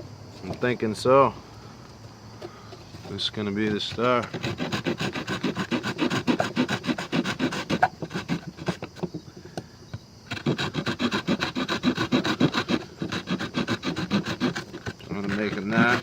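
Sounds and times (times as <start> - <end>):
saw blade cutting wood: 4.2 - 8.9, 10.3 - 16.0.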